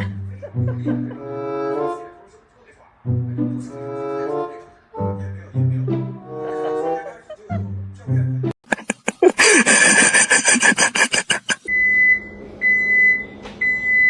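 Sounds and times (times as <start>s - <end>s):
low bowed-string notes: 0.0s - 2.2s, 3.0s - 8.5s.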